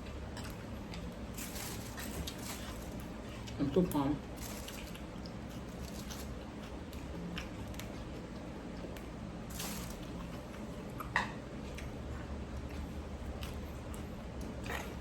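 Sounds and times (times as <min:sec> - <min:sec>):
low steady hum: 0:00.0 - 0:15.0
chewing and slurping: 0:04.4 - 0:15.0.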